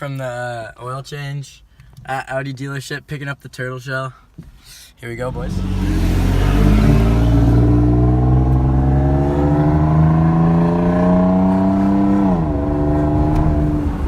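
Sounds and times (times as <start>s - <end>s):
car engine accelerating: 5.2s - 14.0s.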